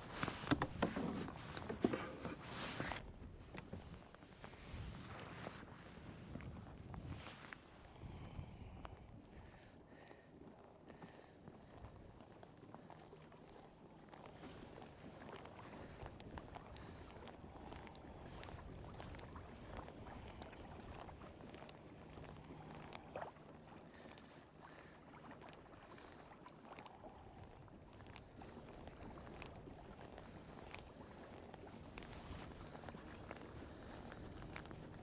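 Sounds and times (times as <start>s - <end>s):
kayak clicks and knocks: 0.0s - 3.8s
light water sounds: 0.0s - 35.0s
wind rumble on microphone: 2.8s - 9.7s, 15.0s - 23.2s.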